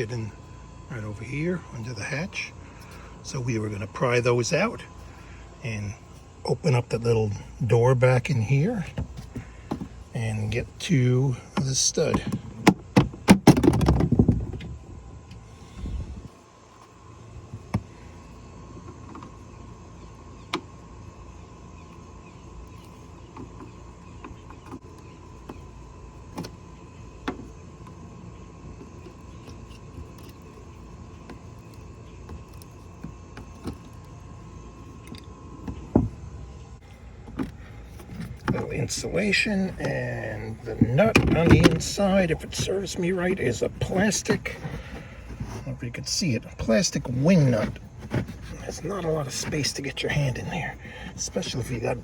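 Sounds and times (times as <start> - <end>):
steady low hum: 0.0 - 52.0
handling noise: 11.6 - 52.0
thin constant tone: 15.0 - 52.0.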